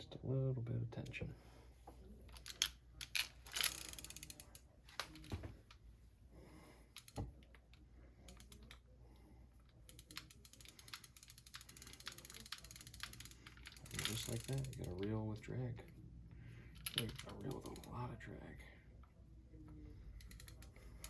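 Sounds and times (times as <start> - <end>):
fishing reel ratcheting click: 2.3 - 5.2, 9.6 - 15.1, 20.2 - 21.0.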